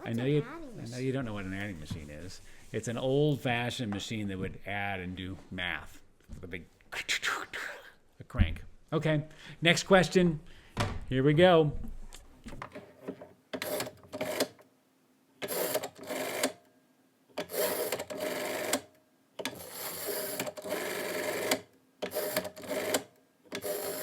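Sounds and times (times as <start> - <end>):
rotary phone dial whirring: 13.6 - 14.6, 15.4 - 16.6, 17.4 - 24.0.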